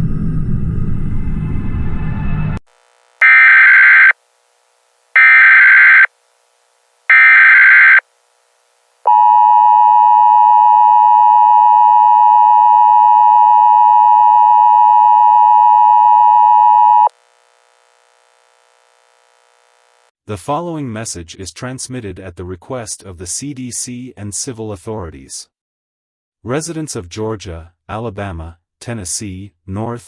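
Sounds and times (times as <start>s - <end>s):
loud steady attention tone: 3.2s - 4.2s, 5.2s - 6.1s, 7.1s - 8.0s
screeching digital data tones: 3.2s - 4.2s, 5.2s - 6.1s, 7.1s - 8.0s.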